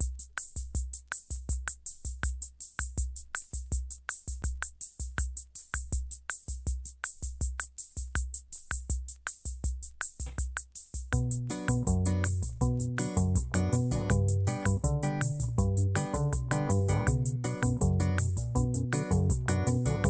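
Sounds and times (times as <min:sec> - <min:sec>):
hi-hat ticks: 0:00.0 - 0:20.0
kick drum: 0:00.0 - 0:20.0
chords and bass: 0:11.2 - 0:20.0.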